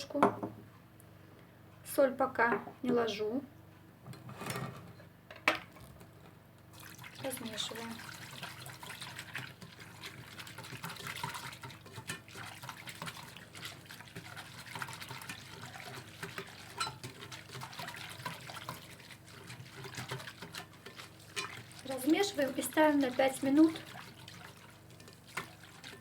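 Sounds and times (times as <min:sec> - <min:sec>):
liquid swishing: 0:06.7 - 0:26.0.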